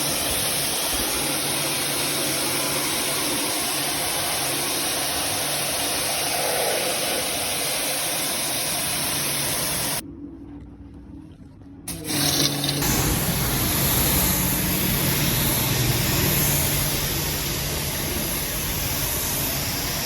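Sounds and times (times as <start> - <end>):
pressure washer spraying: 0.0 - 10.0, 11.9 - 20.0
low motor hum: 7.3 - 20.0.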